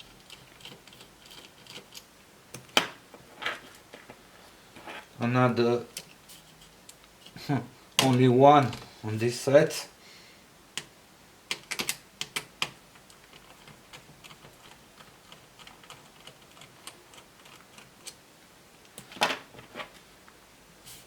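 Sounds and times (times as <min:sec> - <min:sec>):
parts clattering: 0:00.2 - 0:05.2
small laptop parts clicking: 0:11.5 - 0:18.2.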